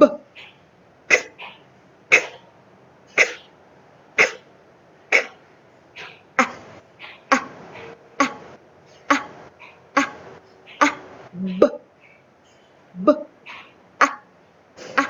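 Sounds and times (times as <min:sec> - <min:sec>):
woman sounding letter sounds: 0:06.0 - 0:11.9.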